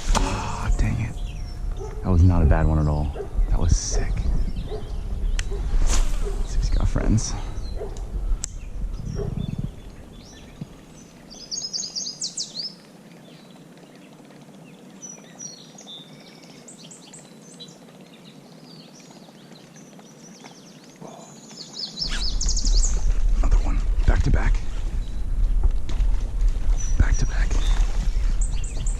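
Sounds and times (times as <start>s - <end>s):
low rumble: 0.0s - 11.3s, 22.0s - 28.9s
birds chirping: 0.0s - 28.9s.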